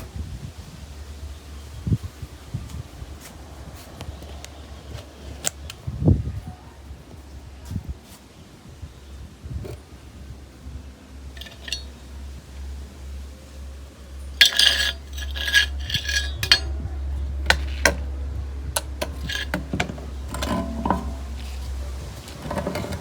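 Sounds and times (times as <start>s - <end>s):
steady low hum: 9.5s - 23.0s
small metal objects clinking: 11.4s - 11.9s, 14.4s - 16.8s, 17.5s - 18.1s, 18.8s - 23.0s.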